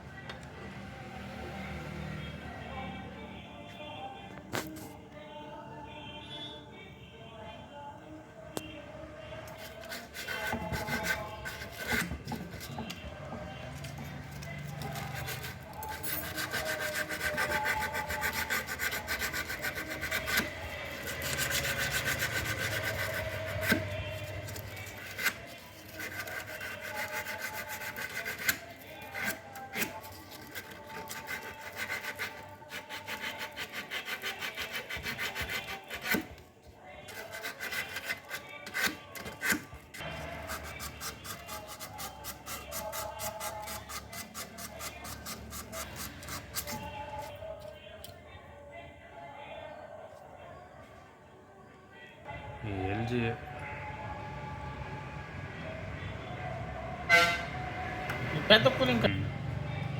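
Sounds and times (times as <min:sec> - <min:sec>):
emery cloth rubbing copper pipe: 0:09.4 - 0:47.7.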